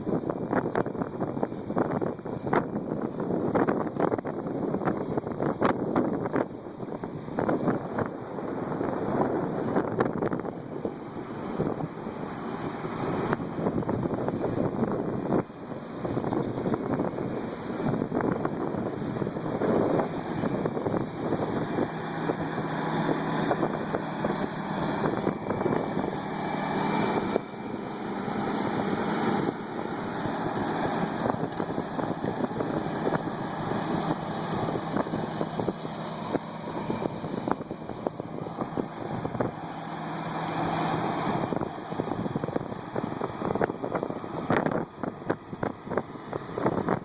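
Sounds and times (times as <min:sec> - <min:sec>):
low engine hum: 0:00.0 - 0:47.0
wind buffeting microphone: 0:00.0 - 0:47.0.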